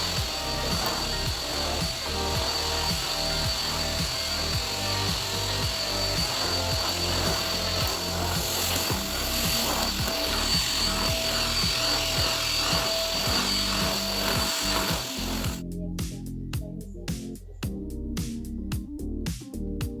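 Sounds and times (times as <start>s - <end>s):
vacuum cleaner running: 0.0s - 15.6s
background music with beat: 0.0s - 20.0s.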